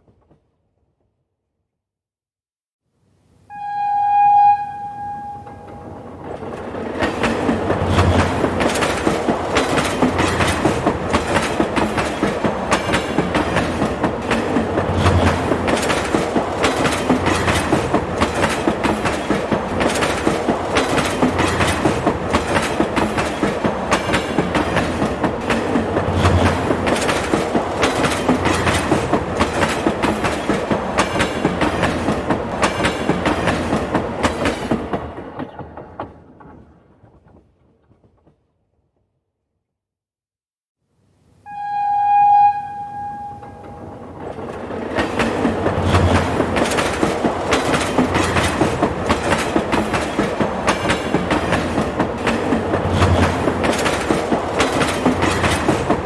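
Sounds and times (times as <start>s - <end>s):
train horn blast: 3.5s - 6.2s, 41.5s - 44.2s
train wheels clattering on rails: 5.0s - 38.5s, 43.0s - 56.0s.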